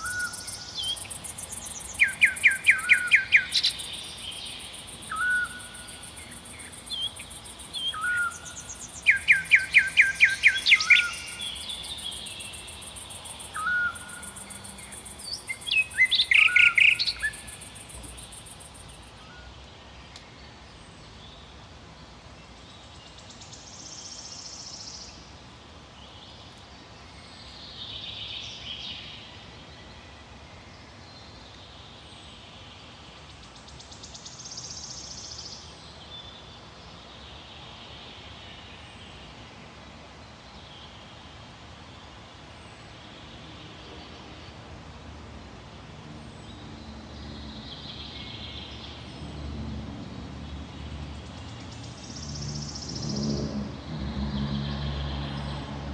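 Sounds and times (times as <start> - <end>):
forest ambience: 0.0 - 55.9
songbirds singing: 0.0 - 55.9.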